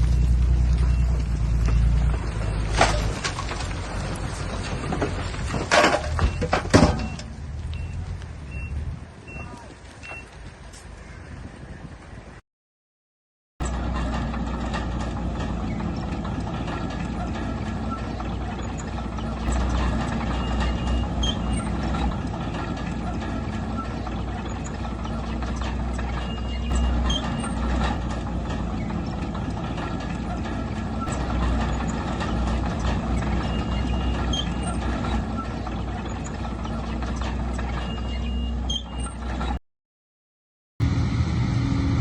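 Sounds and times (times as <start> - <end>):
diesel engine rumbling: 0.0 - 12.4, 13.6 - 39.6, 40.8 - 42.0
short high squeaks: 17.9 - 22.1, 25.5 - 27.9, 32.8 - 36.4, 37.1 - 39.6.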